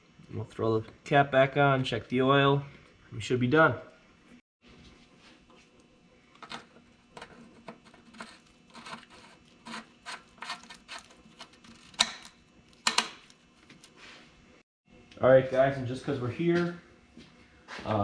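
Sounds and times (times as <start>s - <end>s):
small clicks taps and scraping: 5.5s - 14.0s.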